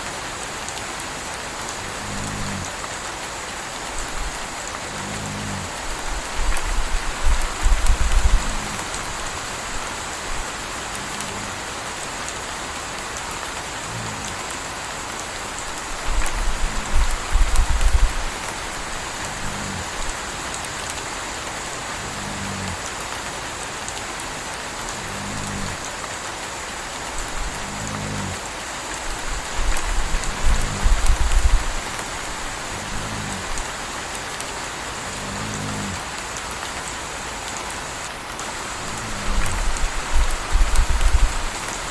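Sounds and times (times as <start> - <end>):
steady rain: 0.0 - 41.9
puppy snoring: 1.9 - 2.7, 4.2 - 9.3, 16.0 - 20.2, 22.0 - 22.8, 25.0 - 25.8, 27.3 - 28.4, 29.4 - 33.7, 35.0 - 36.0.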